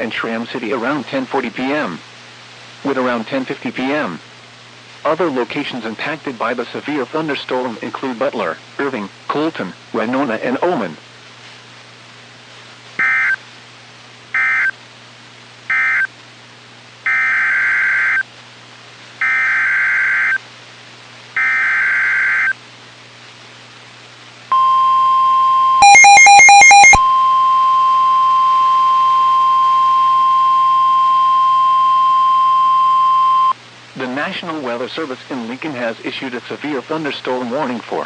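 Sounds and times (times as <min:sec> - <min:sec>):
steady warning alarm tone: 0:13.0 - 0:13.4, 0:14.4 - 0:14.7, 0:15.7 - 0:16.1, 0:17.1 - 0:18.2, 0:19.2 - 0:20.4, 0:21.4 - 0:22.5, 0:24.5 - 0:33.6
screeching data bursts: 0:25.8 - 0:27.0.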